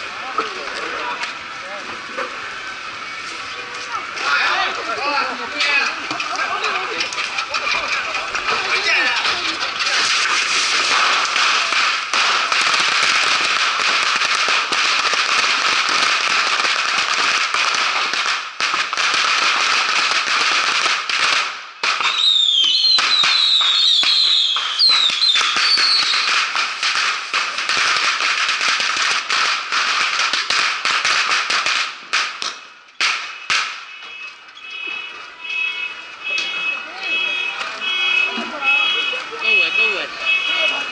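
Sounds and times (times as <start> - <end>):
bottle rockets hissing and crackling: 0.0 - 34.0
sharp cracks: 5.6 - 34.4
high whistles: 22.0 - 26.4.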